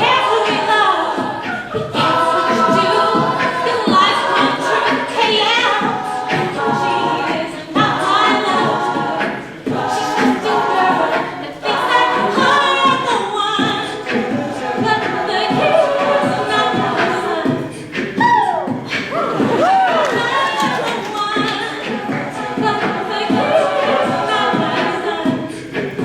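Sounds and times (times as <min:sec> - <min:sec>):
a cappella group singing: 0:00.0 - 0:26.0.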